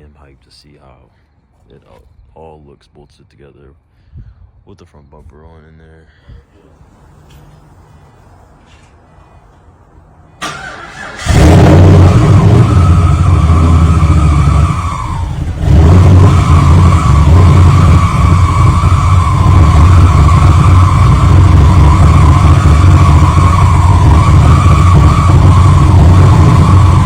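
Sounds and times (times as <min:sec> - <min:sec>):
car engine running loudly: 0:11.2 - 0:27.0.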